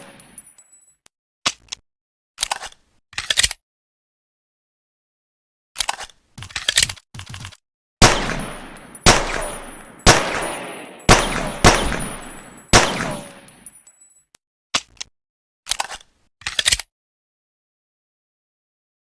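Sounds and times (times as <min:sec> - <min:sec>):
echoing gunshots: 0:08.0 - 0:13.6.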